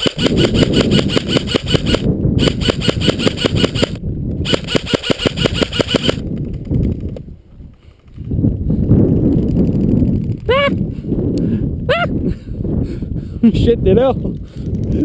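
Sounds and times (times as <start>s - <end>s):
airsoft rifle firing full-auto: 0.0s - 6.2s.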